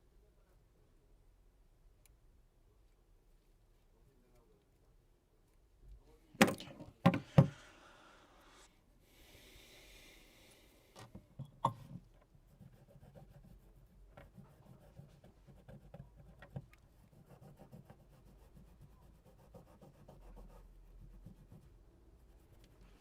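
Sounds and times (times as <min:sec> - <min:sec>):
tools knocking on phone frame: 0:06.4 - 0:07.6, 0:11.4 - 0:12.0
light scratching and rubbing: 0:11.8 - 0:23.0.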